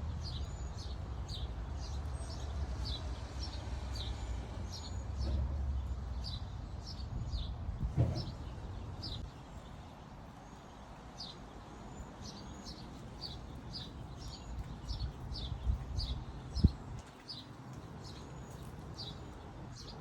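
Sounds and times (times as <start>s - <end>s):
low rumbling background noise: 0.0s - 20.0s
thump: 7.9s - 8.4s.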